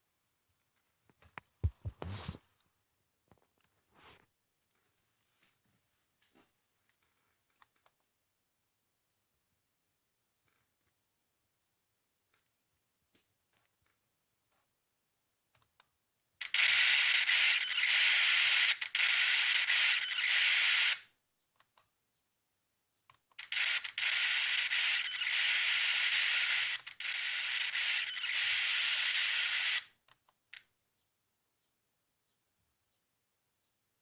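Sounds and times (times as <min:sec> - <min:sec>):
laptop speakers static hiss: 0:01.6 - 0:02.4, 0:16.4 - 0:21.0, 0:23.4 - 0:29.9.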